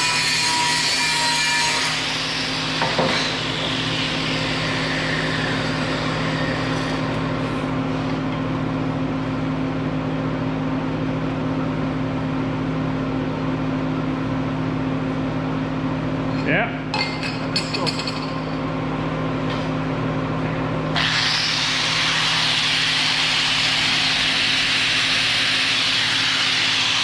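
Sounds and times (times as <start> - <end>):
power tool whining on metal: 0.0 - 7.8, 21.0 - 27.0
low machine hum: 2.0 - 27.0.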